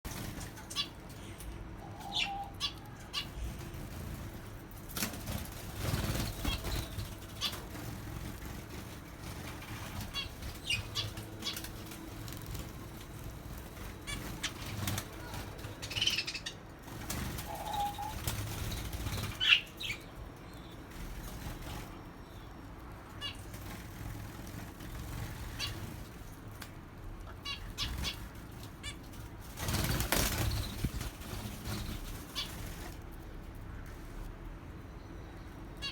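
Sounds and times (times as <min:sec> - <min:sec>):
birds flapping wings: 0:00.1 - 0:01.1, 0:02.6 - 0:20.0, 0:20.8 - 0:22.1, 0:23.0 - 0:34.2.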